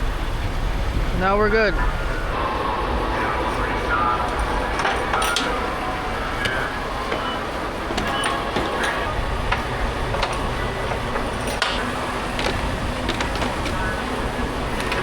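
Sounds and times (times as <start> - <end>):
truck engine and road rumble: 0.0 - 15.0
clicks and rattles in cab: 4.2 - 15.0.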